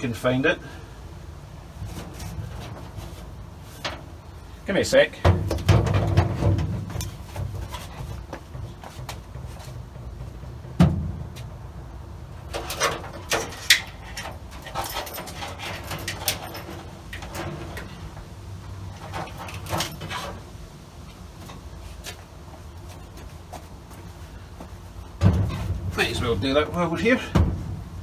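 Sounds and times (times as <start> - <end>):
knocks and clicks of handled parts: 12.4 - 20.4.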